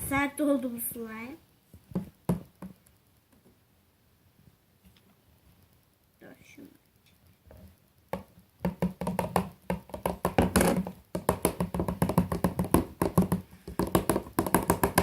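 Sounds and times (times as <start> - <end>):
slime knocking and scraping: 8.2 - 15.0.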